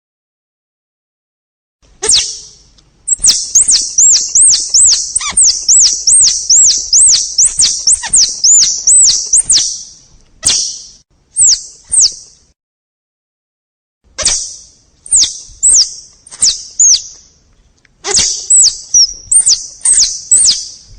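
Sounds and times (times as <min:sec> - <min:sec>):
squirrel chirping: 0:02.0 - 0:12.3, 0:14.2 - 0:17.2, 0:18.0 - 0:20.8.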